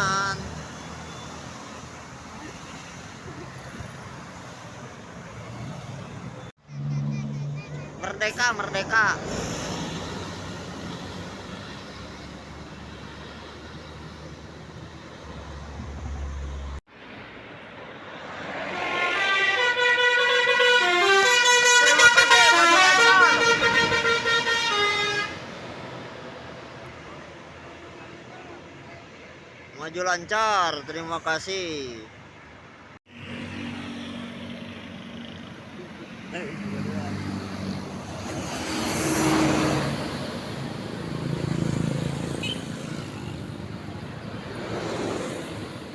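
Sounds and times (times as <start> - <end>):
road traffic passing: 0.0 - 45.9
multi-tone bus horn melody: 18.6 - 25.6.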